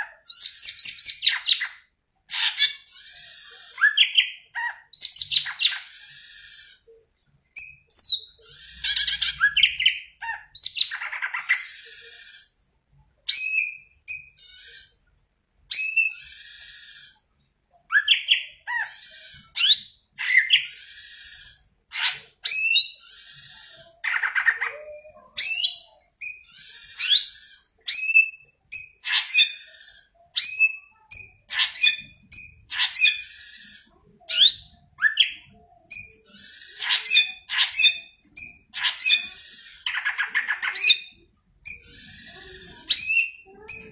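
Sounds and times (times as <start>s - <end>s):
bird singing whistles and chatter: 15.7s - 17.2s, 17.9s - 43.9s.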